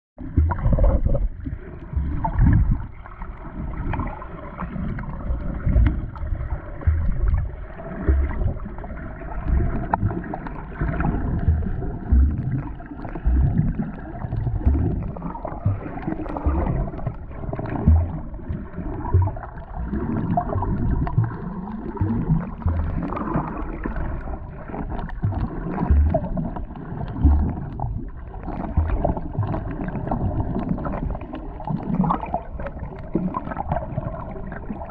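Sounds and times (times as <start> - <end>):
water gurgling and sloshing: 0.2 - 34.9.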